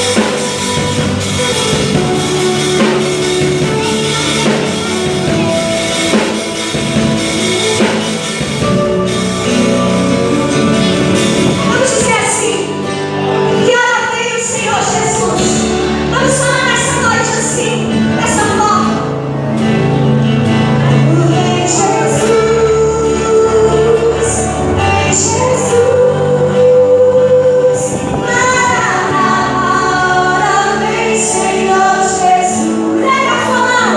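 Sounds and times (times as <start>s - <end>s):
gospel band playing: 0.0s - 33.9s
woman singing lead vocal: 10.4s - 19.1s, 20.8s - 33.9s.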